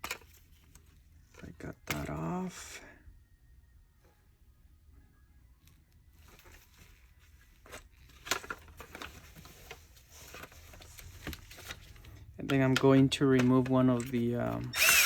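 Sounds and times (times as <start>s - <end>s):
plastic parts clicking and knocking: 11.2s - 15.0s.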